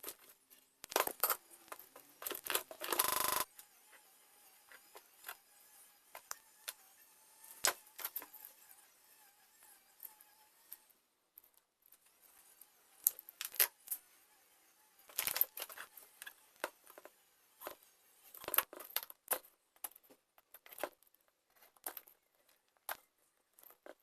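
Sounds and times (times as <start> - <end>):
small tools and parts clinking: 0.0 - 3.7, 15.1 - 24.0.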